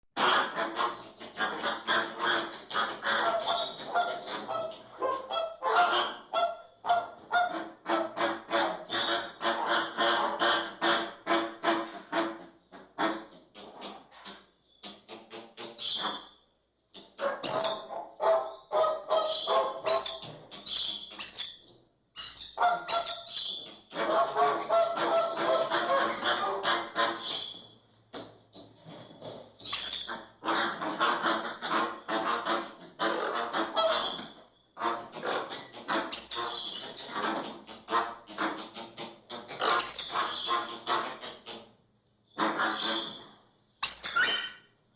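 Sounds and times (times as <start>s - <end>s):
flamingo calls: 17.4s - 21.5s.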